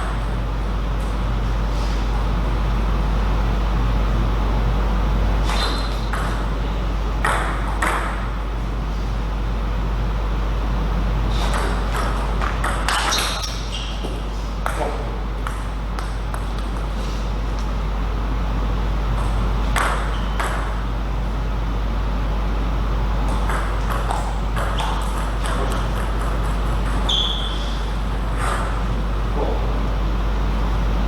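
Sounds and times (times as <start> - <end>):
steady low hum: 0.0 - 31.0
short high squeak: 13.1 - 14.0, 27.0 - 27.8.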